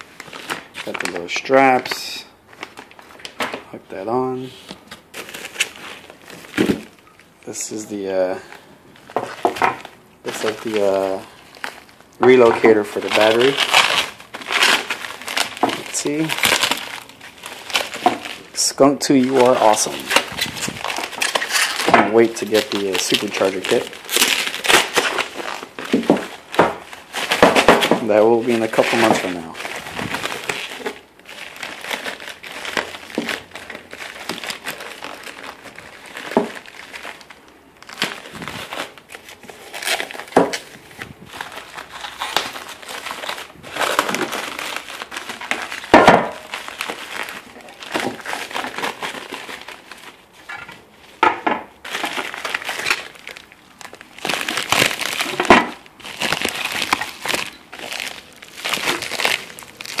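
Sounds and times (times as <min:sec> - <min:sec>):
packaging crinkling and rustling: 0:00.0 - 1:00.0.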